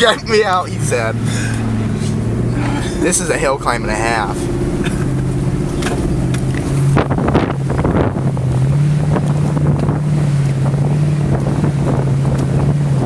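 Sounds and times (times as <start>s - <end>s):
engine droning under load: 0.0s - 13.0s
knocks and rustling: 4.4s - 8.1s.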